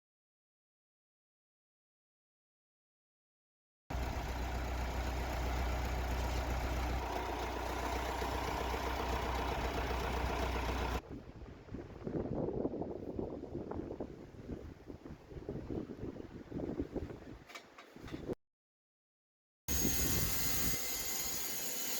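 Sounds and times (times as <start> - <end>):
sawmill engine milling log: 3.9 - 11.0.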